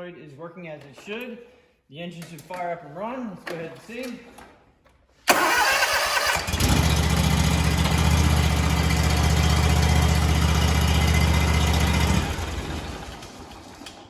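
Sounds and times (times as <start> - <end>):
small gasoline engine running: 5.4 - 14.0.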